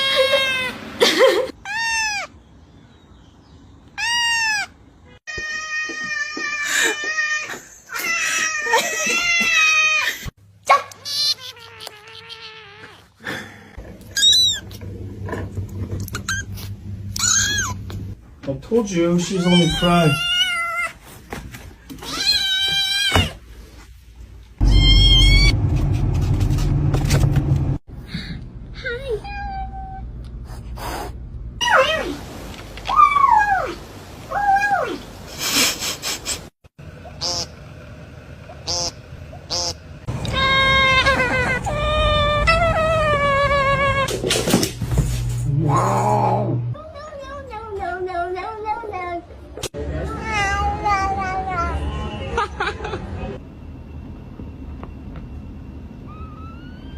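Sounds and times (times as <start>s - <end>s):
cat meowing: 11.3s - 13.1s, 19.4s - 21.0s, 24.6s - 25.5s
loud low rumble: 24.6s - 27.8s.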